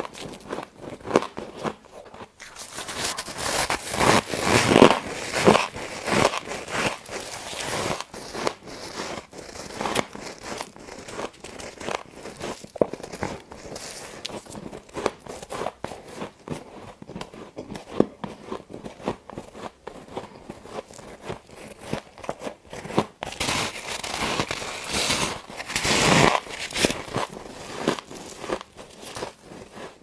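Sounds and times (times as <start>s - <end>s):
frost being crunched: 2.4s - 8.0s.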